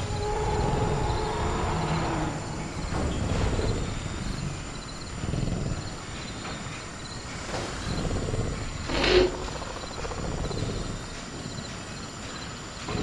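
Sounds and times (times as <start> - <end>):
creature growling: 0.0 - 6.2
crickets chirping: 0.0 - 13.0.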